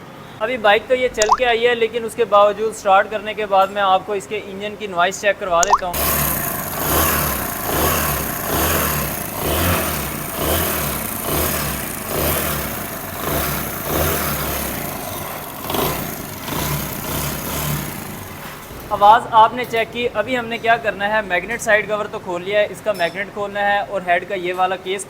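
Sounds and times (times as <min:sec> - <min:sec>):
mechanical noise inside engine: 0:05.8 - 0:18.9
motorcycle engine running: 0:05.9 - 0:18.9.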